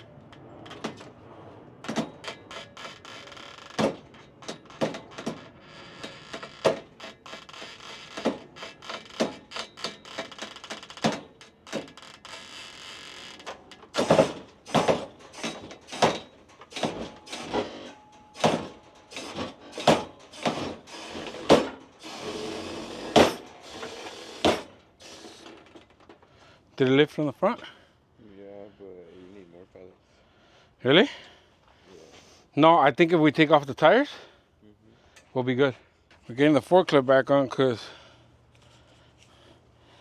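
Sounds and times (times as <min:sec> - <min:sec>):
metal and wooden clunks: 0:00.3 - 0:01.2, 0:01.8 - 0:12.4, 0:13.3 - 0:26.4.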